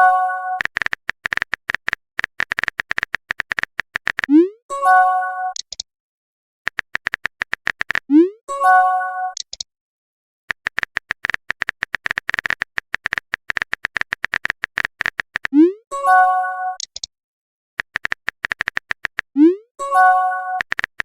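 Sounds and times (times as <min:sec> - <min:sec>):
phone keyboard typing clicks: 0:00.6 - 0:04.3, 0:06.7 - 0:08.1, 0:09.4 - 0:09.7, 0:10.5 - 0:15.6, 0:16.8 - 0:17.1, 0:17.8 - 0:19.4, 0:20.6 - 0:21.0.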